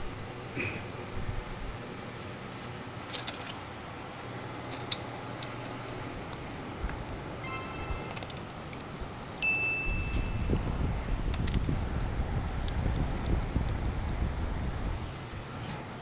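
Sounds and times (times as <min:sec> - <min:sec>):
low workshop hum: 0:00.0 - 0:16.0
chime: 0:07.4 - 0:08.5, 0:09.4 - 0:10.7.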